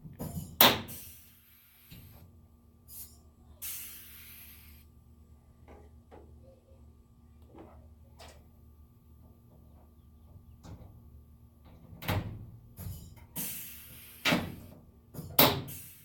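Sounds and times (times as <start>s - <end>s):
rivet gun air hiss: 0.8s - 2.2s, 2.9s - 4.9s, 13.4s - 14.7s, 15.5s - 16.0s.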